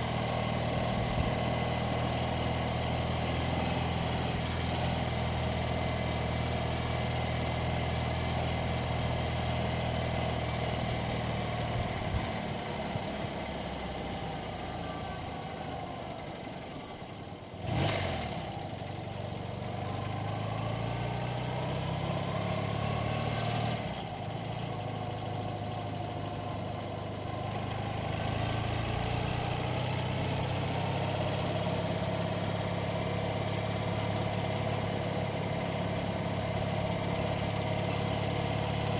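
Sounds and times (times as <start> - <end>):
motorcycle engine running: 0.0 - 38.9.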